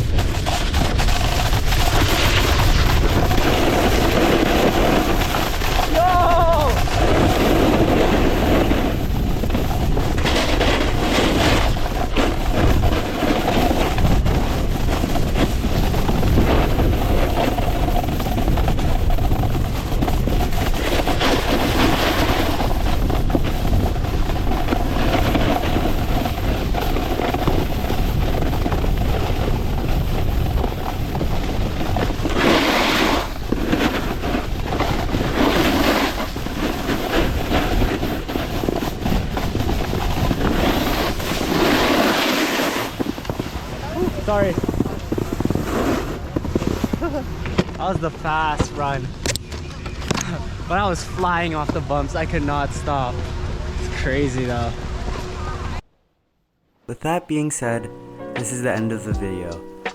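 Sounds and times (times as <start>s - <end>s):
wind buffeting microphone: 0.0s - 20.9s
snowboard scraping over snow: 0.0s - 47.3s.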